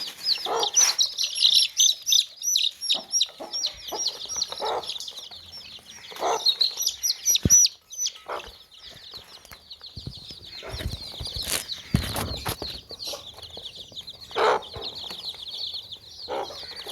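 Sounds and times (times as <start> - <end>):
hen clucking: 0.0 - 9.0, 10.4 - 16.9
baby chicks peeping: 0.0 - 16.9
birds rustling and knocking: 9.0 - 15.5.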